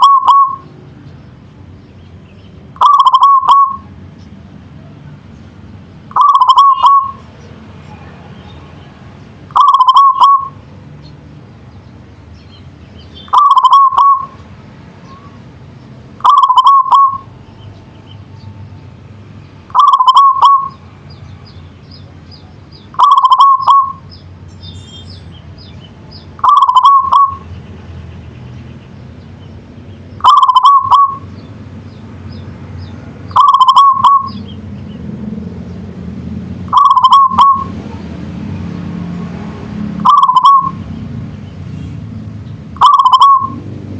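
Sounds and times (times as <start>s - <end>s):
dove cooing: 0.0s - 0.7s, 2.8s - 3.9s, 6.1s - 7.2s, 9.5s - 10.6s, 13.3s - 14.4s, 16.2s - 17.3s, 19.7s - 20.8s, 23.0s - 24.0s, 26.4s - 27.5s, 30.2s - 31.3s, 33.3s - 34.5s, 36.7s - 38.0s, 40.0s - 40.8s, 42.8s - 43.6s.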